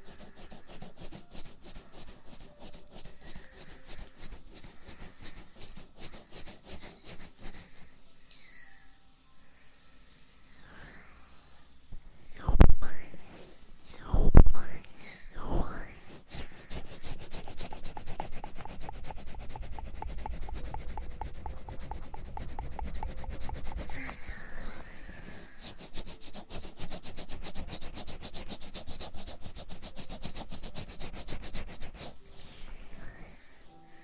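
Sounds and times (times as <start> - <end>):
rubbing on microphone: 0.0 - 8.0, 15.5 - 33.5.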